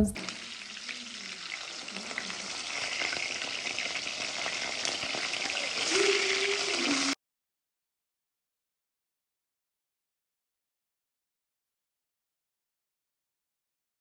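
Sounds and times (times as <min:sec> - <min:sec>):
food sizzling in hot oil: 0:00.0 - 0:07.2.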